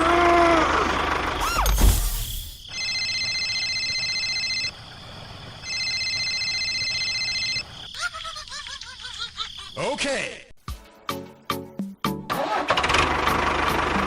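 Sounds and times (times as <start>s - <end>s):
electronic phone ringing tone: 2.7s - 4.8s, 5.6s - 7.7s.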